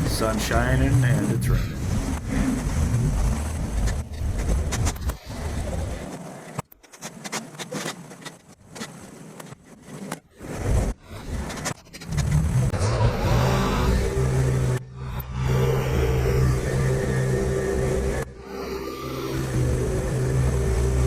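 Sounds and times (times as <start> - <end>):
crackling and scraping: 0.0 - 21.0
engine running steadily: 12.8 - 21.0.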